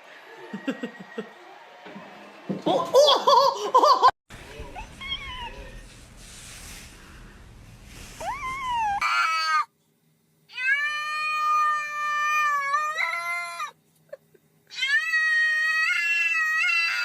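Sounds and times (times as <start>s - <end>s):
cat meowing: 4.8s - 5.8s.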